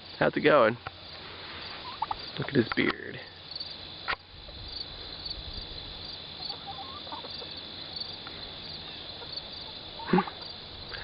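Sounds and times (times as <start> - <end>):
insects chirping: 0.0 - 11.0
faint poultry calls: 0.8 - 2.6, 6.3 - 11.0.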